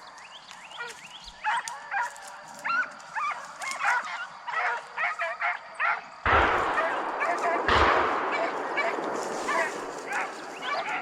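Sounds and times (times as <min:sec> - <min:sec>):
hounds baying and yelping: 0:00.0 - 0:11.0.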